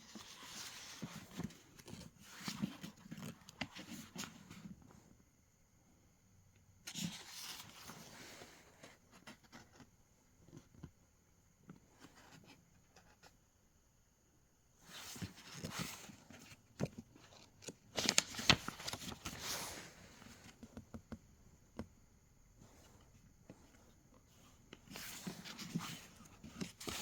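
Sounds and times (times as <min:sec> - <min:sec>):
handling rustling: 0:22.6 - 0:27.0.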